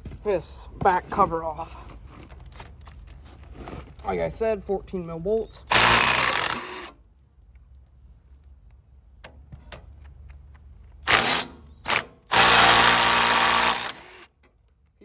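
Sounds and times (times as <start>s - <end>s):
cordless power tool spinning: 5.7s - 6.9s, 11.1s - 14.3s.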